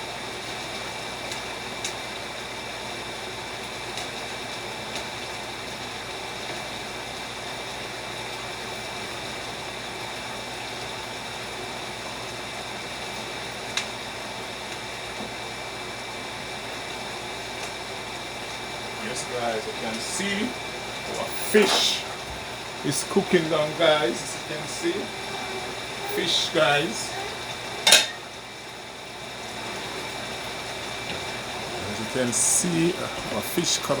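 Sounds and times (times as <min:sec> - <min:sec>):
pots simmering on stove: 0:00.0 - 0:34.0
faint whine: 0:18.2 - 0:34.0.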